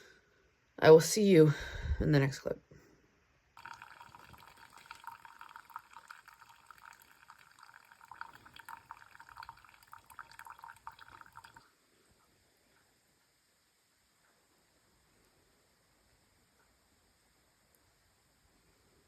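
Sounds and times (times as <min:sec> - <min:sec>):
water running and trickling: 0:03.6 - 0:11.6.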